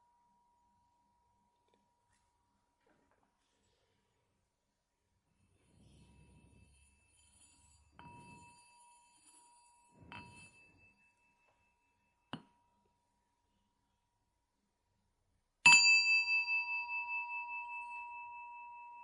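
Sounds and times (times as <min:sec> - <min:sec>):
soft bell strikes ringing: 0:05.6 - 0:13.2, 0:15.7 - 0:19.0.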